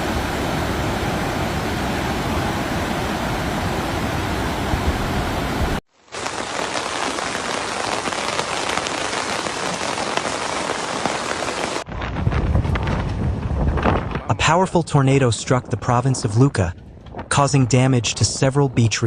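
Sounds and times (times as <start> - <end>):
steady rushing noise: 0.0 - 7.7
heavy rain on hard surface: 0.0 - 13.8.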